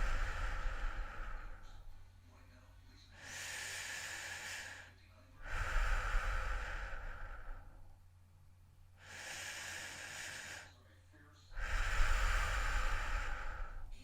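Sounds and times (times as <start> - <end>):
low rumble: 0.0 - 2.1
heavy human breathing: 0.0 - 8.0, 8.9 - 14.0.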